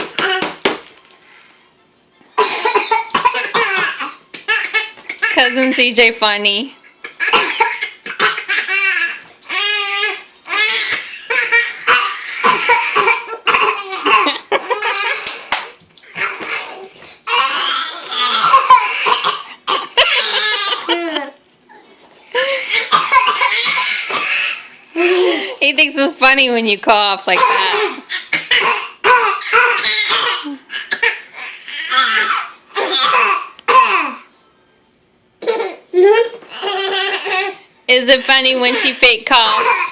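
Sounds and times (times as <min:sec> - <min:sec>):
baby laughing: 0:07.0 - 0:21.4, 0:22.3 - 0:25.5, 0:27.4 - 0:34.1, 0:35.4 - 0:37.6
person fake coughing: 0:11.9 - 0:14.5, 0:27.3 - 0:31.2.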